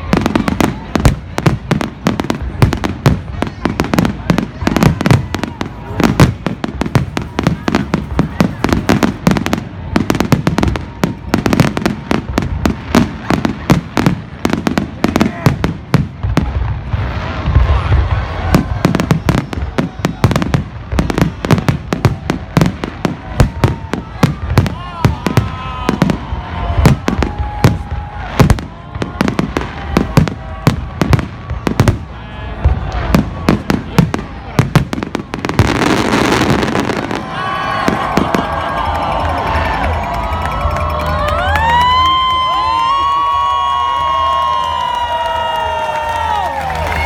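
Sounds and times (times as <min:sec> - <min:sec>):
fireworks bangs and crackles: 0:00.0 - 0:47.0
fireworks whistling: 0:32.8 - 0:38.7.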